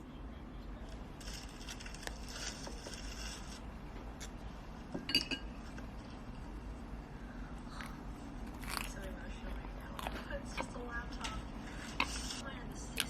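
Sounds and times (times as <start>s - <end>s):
tableware rustling: 4.9s - 6.3s
glass clinking on hard surface: 5.0s - 5.5s.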